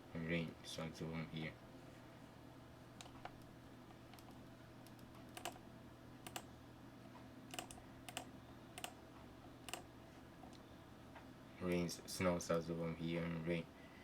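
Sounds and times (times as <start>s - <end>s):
low steady hum: 0.0s - 14.0s
computer key clicks: 4.1s - 5.6s, 6.2s - 6.5s, 7.5s - 9.0s.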